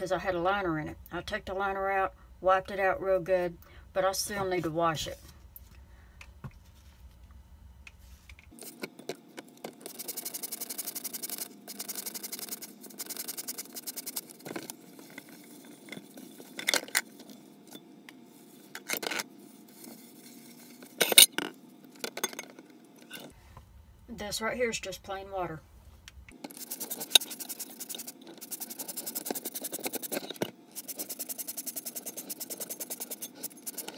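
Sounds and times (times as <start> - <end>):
scrubbing pot by hand: 9.8 - 16.6, 26.5 - 33.9.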